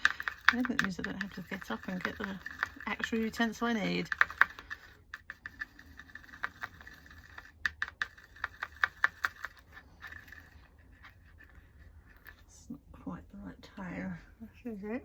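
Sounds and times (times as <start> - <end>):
paintbrush tapping on palette: 0.0 - 10.5.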